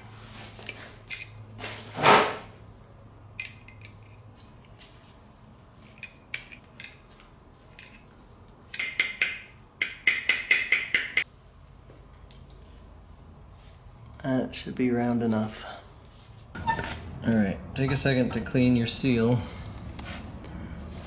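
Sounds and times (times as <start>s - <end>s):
ringing taps on metal cap: 8.8s - 11.2s.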